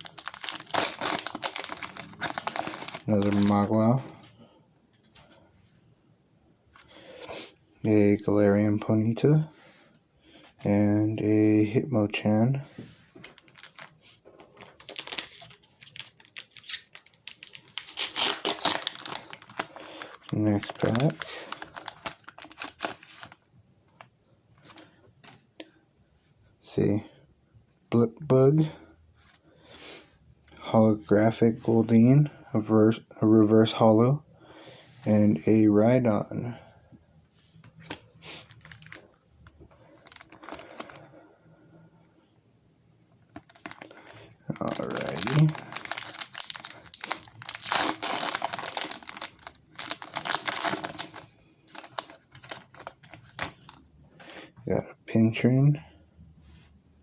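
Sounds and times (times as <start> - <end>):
wrappers and cards crinkling: 0.0 - 3.9, 13.2 - 24.9, 37.7 - 41.1, 43.3 - 54.4.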